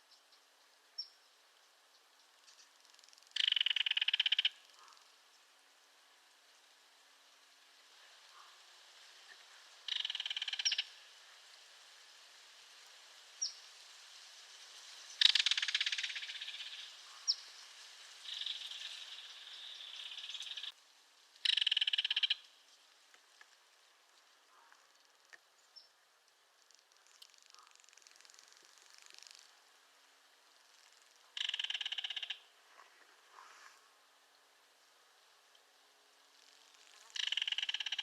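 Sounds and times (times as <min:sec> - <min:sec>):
kingfisher rattling call: 0:03.3 - 0:04.8, 0:09.9 - 0:10.9, 0:15.2 - 0:17.4, 0:18.2 - 0:20.7, 0:21.4 - 0:22.4, 0:30.9 - 0:32.5, 0:36.9 - 0:38.0.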